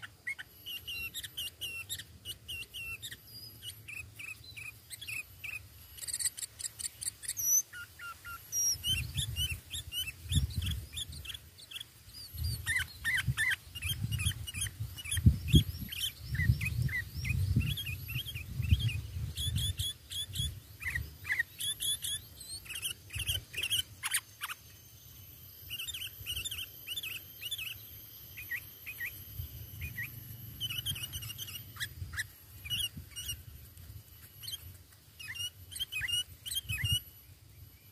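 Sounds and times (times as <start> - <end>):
birds chirping: 0.0 - 37.9.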